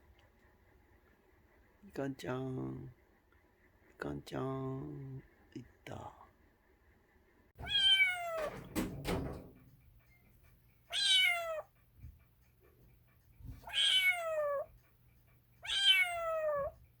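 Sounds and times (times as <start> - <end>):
cat meowing: 7.6 - 8.6, 10.9 - 11.8, 13.6 - 14.7, 15.6 - 16.8.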